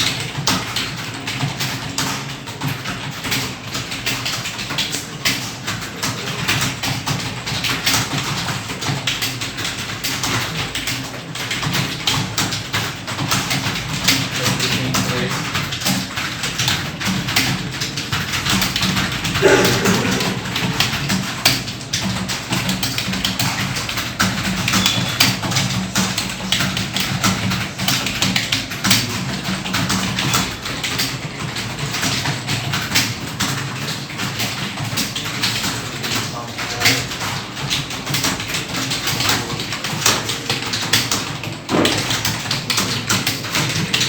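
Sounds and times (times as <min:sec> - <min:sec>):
keyboard typing: 0:00.0 - 0:44.0.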